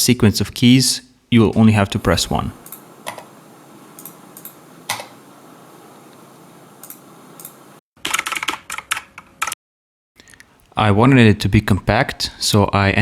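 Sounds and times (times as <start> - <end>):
low hiss: 0.6 - 7.8
mechanical keyboard clicks: 6.8 - 9.6.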